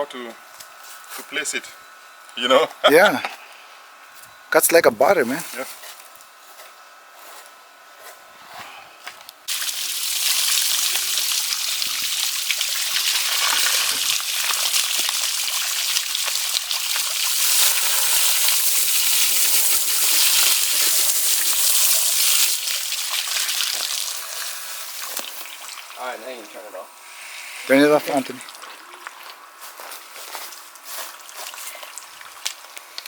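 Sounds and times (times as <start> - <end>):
person speaking: 4.6 - 5.7, 27.6 - 29.0
running water gushing: 9.5 - 26.8.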